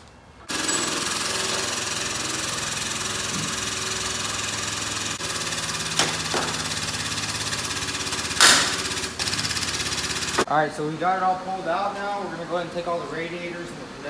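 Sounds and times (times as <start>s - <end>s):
hydraulic pump pulsing: 0.5s - 10.5s.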